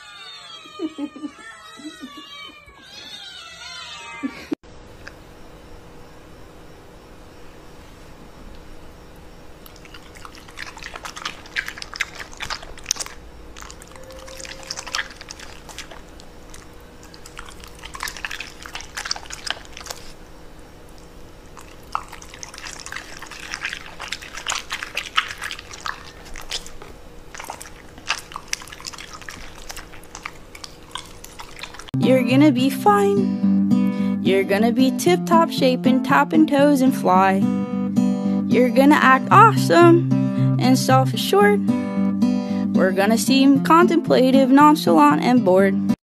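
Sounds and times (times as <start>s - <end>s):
pet eating with wet smacking: 9.6s - 32.0s.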